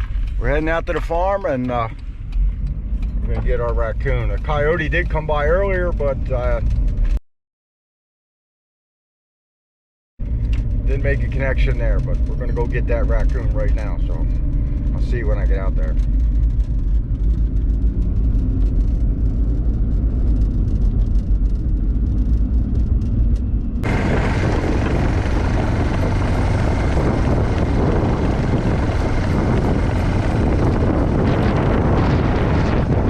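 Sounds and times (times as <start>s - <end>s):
vehicle engine rumbling: 0.0s - 7.2s, 10.2s - 33.0s
rough engine noise with hiss: 23.8s - 33.0s.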